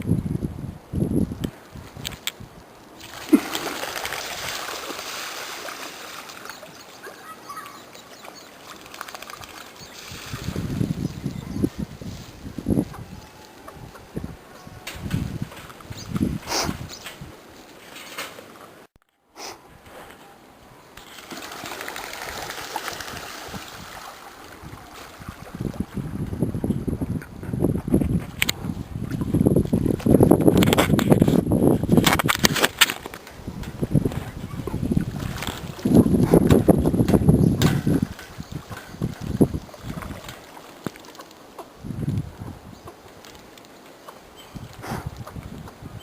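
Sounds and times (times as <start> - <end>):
pond water splashing: 2.9 - 12.6, 20.9 - 27.2, 31.9 - 44.3.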